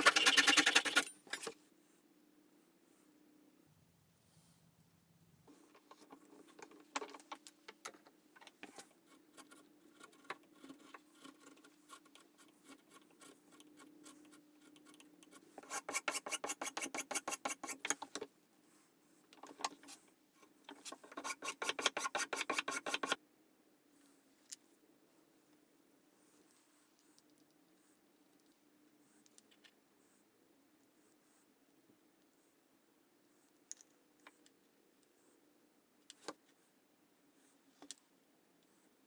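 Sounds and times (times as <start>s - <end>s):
hand file scraping: 0.0s - 1.1s, 9.2s - 18.0s, 20.8s - 23.2s.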